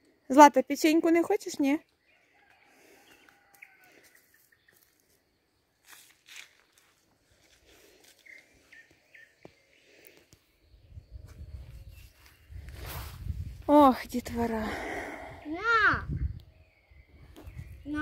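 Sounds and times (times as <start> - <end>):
wind rumbling on microphone: 10.7 - 18.0.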